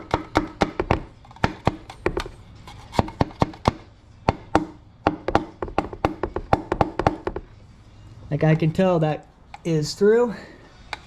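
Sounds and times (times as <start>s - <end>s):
wooden mallet tapping: 3.2s - 7.5s.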